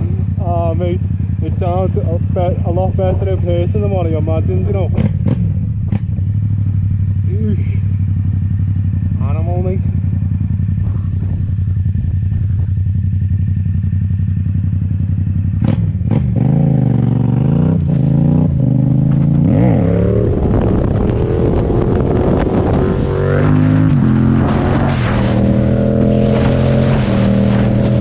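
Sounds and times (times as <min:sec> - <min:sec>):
motorcycle engine idling and revving: 0:00.0 - 0:28.0.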